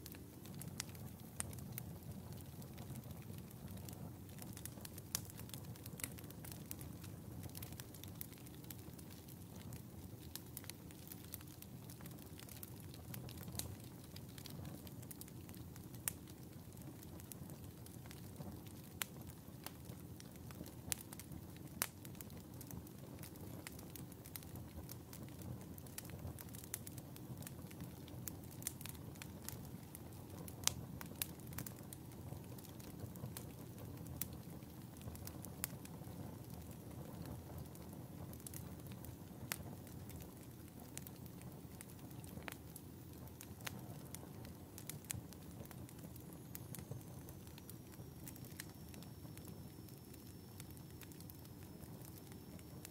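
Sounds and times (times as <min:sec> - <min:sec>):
fire crackling and popping: 0:00.0 - 0:52.9
fire hissing and rumbling: 0:00.0 - 0:52.9.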